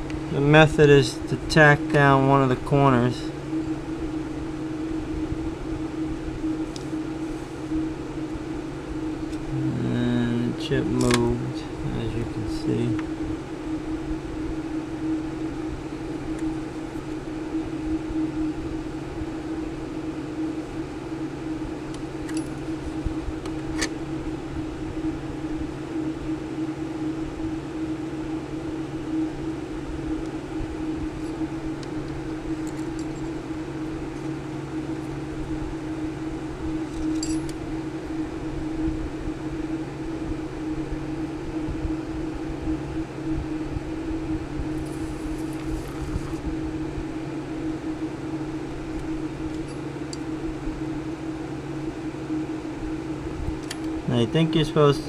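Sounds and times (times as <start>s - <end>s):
mechanical hum of small motor: 0.0s - 55.0s.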